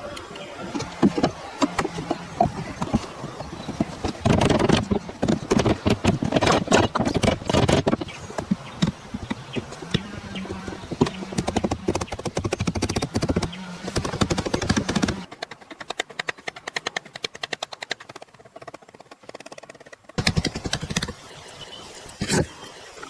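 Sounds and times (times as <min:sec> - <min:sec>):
knocking and tapping on wood: 0:00.8 - 0:15.3.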